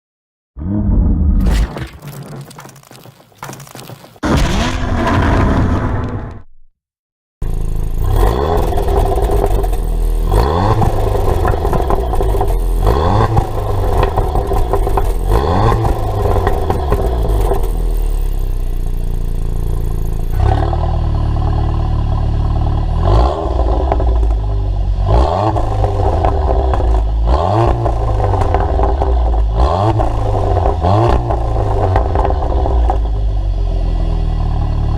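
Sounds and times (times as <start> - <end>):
car engine revving in blips: 7.8 - 18.0, 23.0 - 33.3.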